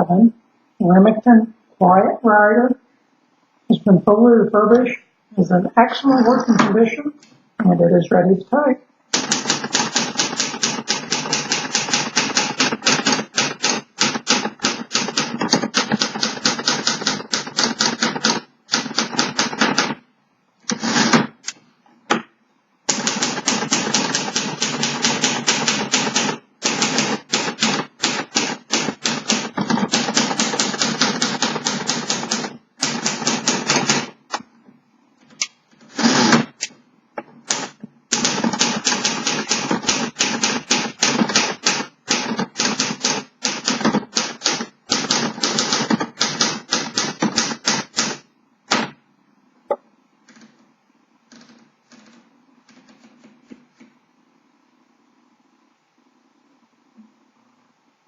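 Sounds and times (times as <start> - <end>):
manual typewriter typing: 9.1 - 20.0, 20.7 - 21.3, 22.9 - 34.2, 37.4 - 49.0.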